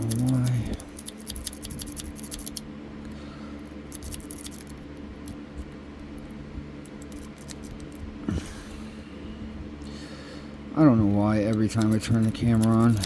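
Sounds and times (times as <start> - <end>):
lock pick scraping and clicking: 0.0 - 2.6, 3.9 - 5.7, 6.8 - 8.0, 11.5 - 13.0
low hum: 0.0 - 13.0.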